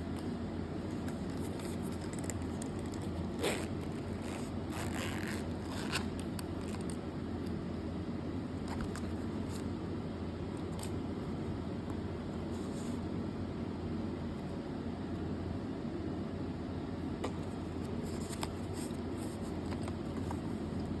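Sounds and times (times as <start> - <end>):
steady low hum: 0.0 - 21.0
purse rustling and scraping: 0.1 - 7.0, 8.6 - 9.7, 17.6 - 20.8.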